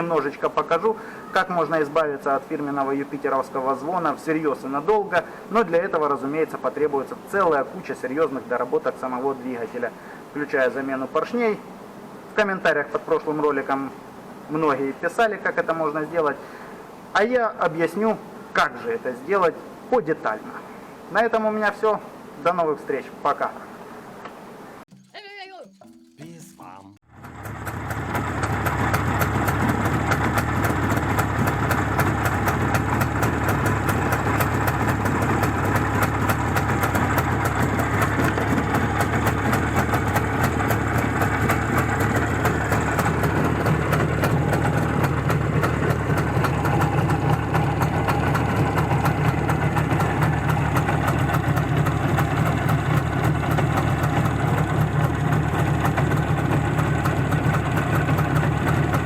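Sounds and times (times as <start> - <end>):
motorcycle engine idling: 27.1 - 59.0.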